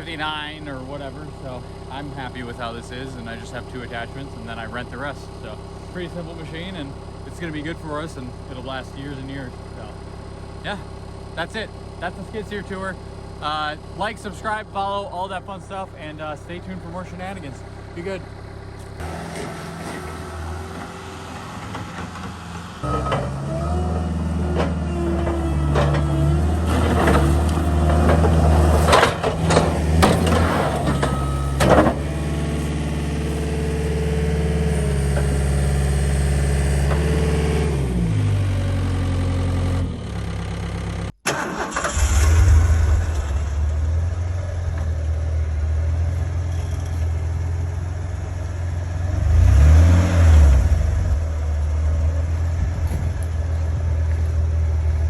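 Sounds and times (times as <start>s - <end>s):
diesel engine running: 0.0s - 55.0s
knocks and clanks: 19.0s - 32.8s, 35.0s - 35.6s.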